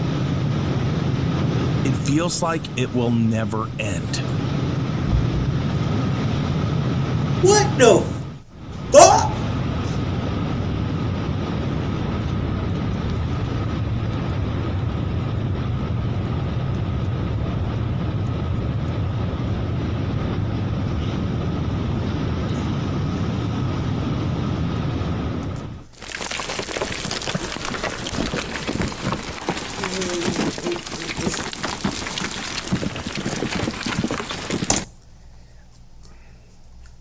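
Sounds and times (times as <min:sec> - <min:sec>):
avalanche roaring: 0:04.9 - 0:06.1, 0:08.9 - 0:09.7.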